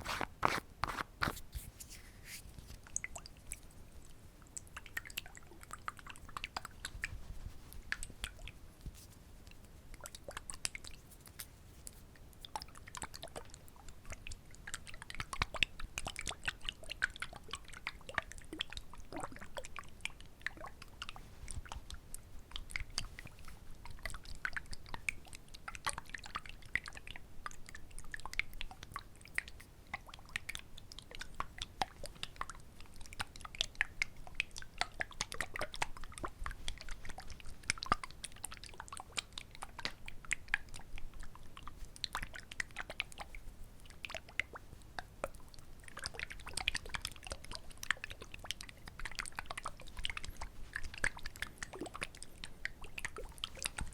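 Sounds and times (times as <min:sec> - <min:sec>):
small wet clicks and crackles: 0:00.0 - 0:53.9.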